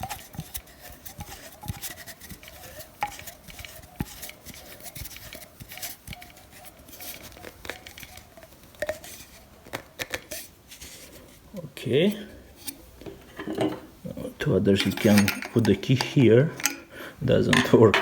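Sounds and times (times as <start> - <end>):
small clicks taps and scrapes: 0.0 - 11.0.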